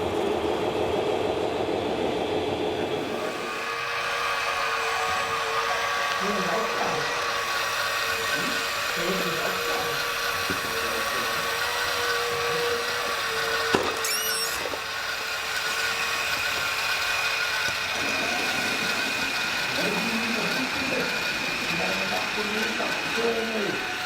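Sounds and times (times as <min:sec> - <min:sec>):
lower motor whine: 0:00.0 - 0:24.0
electric motors whining: 0:02.8 - 0:24.0
high-pitched chirps: 0:14.0 - 0:14.7.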